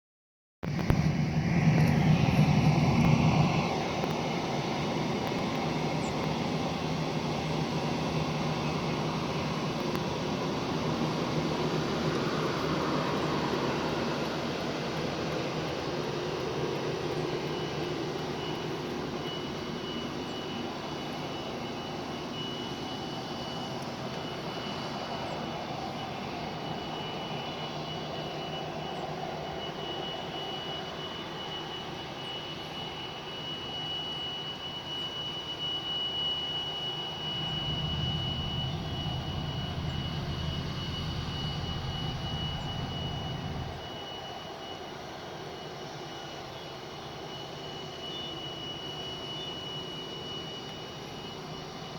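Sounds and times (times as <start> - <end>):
high-pitched whistle: 33.2 - 44.9
steady rumbling: 37.2 - 44.0.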